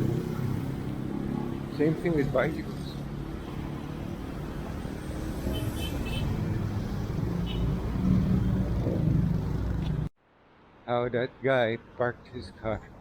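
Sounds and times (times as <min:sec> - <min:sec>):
vehicle approaching: 0:00.0 - 0:10.1
street traffic rumbling: 0:00.0 - 0:10.8.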